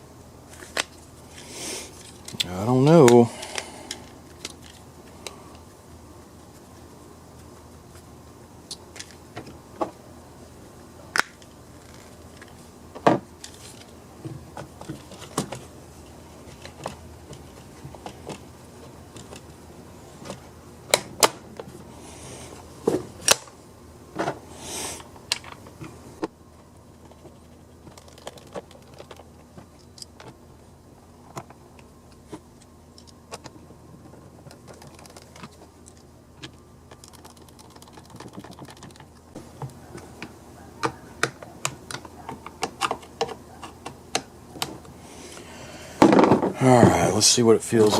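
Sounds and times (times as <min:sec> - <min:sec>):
clicks and knocks of plastic parts: 0:27.0 - 0:30.4.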